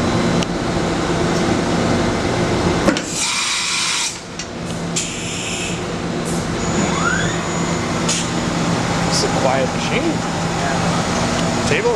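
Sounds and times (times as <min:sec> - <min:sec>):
machine mechanical hum: 0:00.0 - 0:11.9
rising machine whine: 0:06.5 - 0:11.9.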